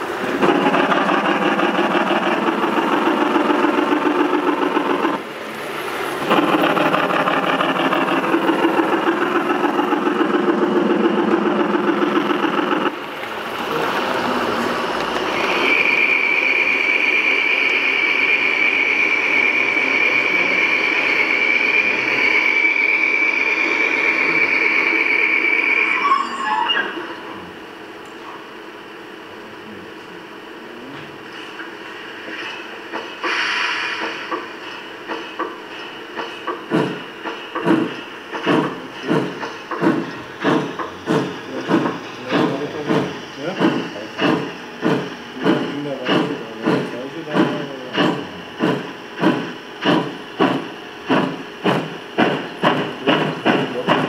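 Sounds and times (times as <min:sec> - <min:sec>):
model steam locomotive chuffing: 0:00.0 - 0:26.1, 0:31.4 - 0:54.0
high-pitched squeal: 0:13.7 - 0:27.6.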